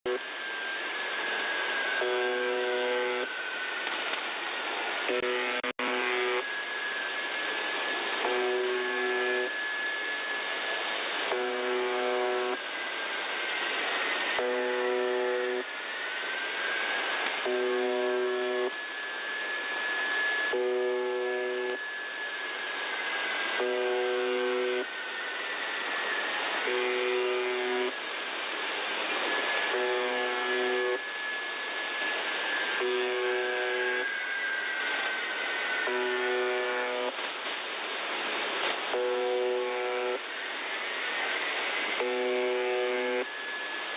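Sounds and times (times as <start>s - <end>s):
radio hiss: 0.1s - 43.9s
radio buzzer: 1.8s - 3.6s, 5.0s - 6.6s, 8.1s - 10.1s, 11.2s - 12.6s, 14.0s - 15.7s, 17.3s - 22.2s, 23.5s - 25.0s, 26.0s - 28.0s, 29.2s - 31.3s, 32.4s - 37.2s, 38.9s - 40.3s, 41.9s - 43.9s.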